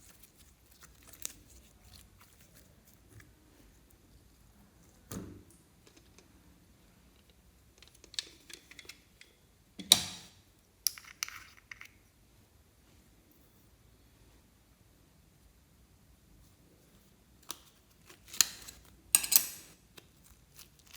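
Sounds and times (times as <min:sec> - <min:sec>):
slime crackling and popping: 0:20.0 - 0:20.9.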